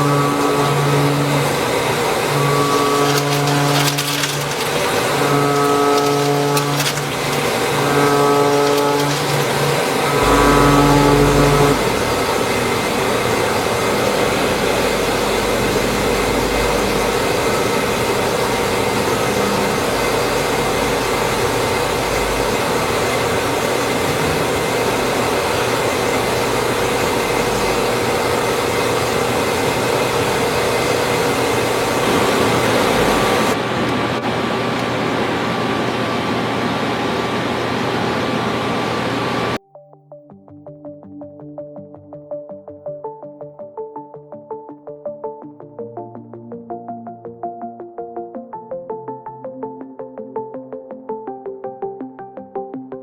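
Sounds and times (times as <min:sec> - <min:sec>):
cnc machine cutting metal: 0:00.0 - 0:39.6
steady machine tones: 0:00.0 - 0:39.6.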